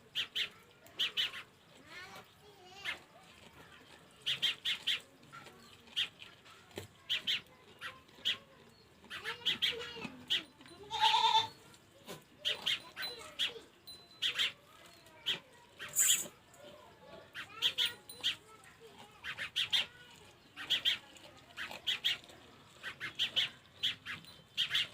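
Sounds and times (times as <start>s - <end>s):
animal high-pitched cries: 0.1s - 1.5s, 7.0s - 11.6s, 12.4s - 14.6s, 15.2s - 16.3s, 17.3s - 18.4s, 19.2s - 24.9s.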